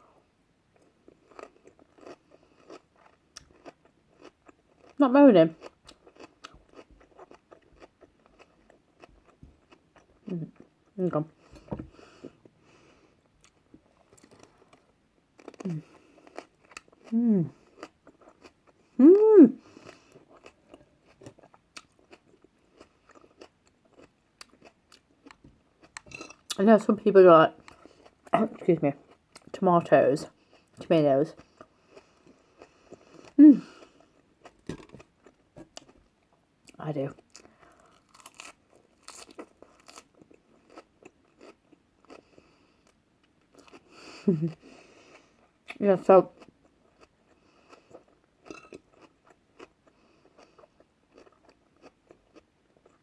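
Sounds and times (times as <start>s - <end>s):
person chewing crunchy food: 0.8s - 5.0s, 5.6s - 19.0s, 19.6s - 26.6s, 27.6s - 29.5s, 31.4s - 53.0s
person humming: 17.1s - 17.6s, 19.0s - 19.6s, 33.4s - 33.7s, 44.3s - 44.6s.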